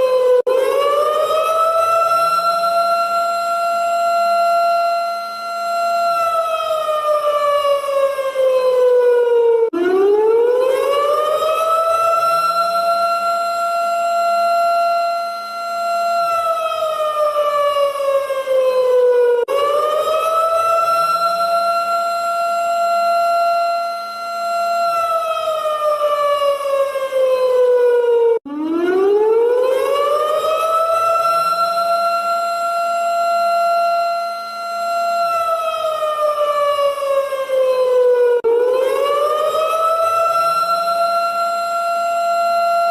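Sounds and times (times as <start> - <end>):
siren wailing: 0.0 - 42.9.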